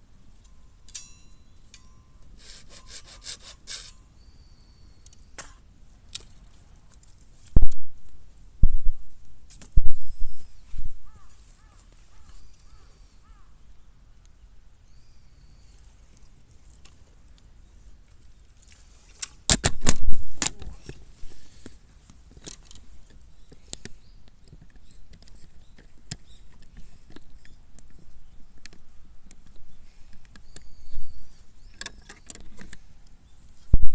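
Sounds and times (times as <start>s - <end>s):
faint bird chirp: 3.9s - 6.5s, 9.9s - 16.6s, 23.2s - 33.8s
bamboo cracking and popping: 18.1s - 28.0s.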